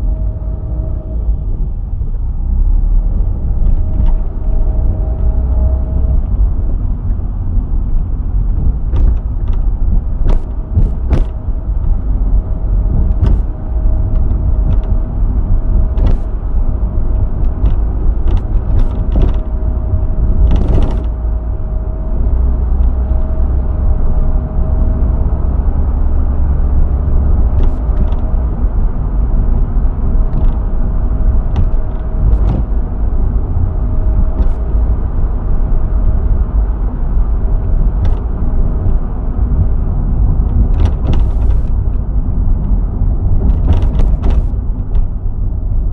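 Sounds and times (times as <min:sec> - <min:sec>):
road and engine rumble: 0:00.0 - 0:45.9
sharp knocks and creaks: 0:03.6 - 0:05.7, 0:08.4 - 0:12.0, 0:12.9 - 0:15.0, 0:15.8 - 0:16.4, 0:17.2 - 0:21.3, 0:27.5 - 0:28.5, 0:30.3 - 0:30.7, 0:31.3 - 0:32.8, 0:40.4 - 0:45.2.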